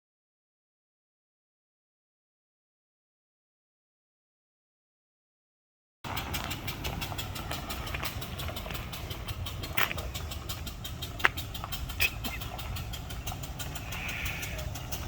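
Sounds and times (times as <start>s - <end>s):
vehicle engine idling: 6.0s - 15.0s
sharp clicks: 6.1s - 15.0s.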